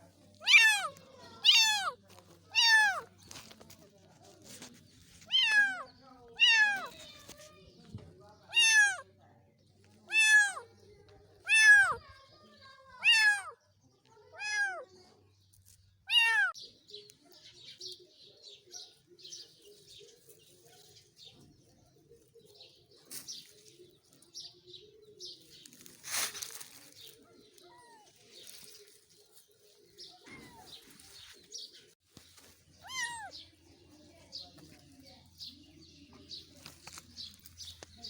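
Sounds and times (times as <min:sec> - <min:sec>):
small birds chirping: 0:00.0 - 0:38.0
kitten meowing: 0:00.4 - 0:03.0, 0:08.5 - 0:09.0, 0:10.1 - 0:10.6, 0:11.5 - 0:12.0, 0:13.0 - 0:13.5, 0:14.4 - 0:14.8, 0:16.1 - 0:16.6, 0:32.8 - 0:33.4.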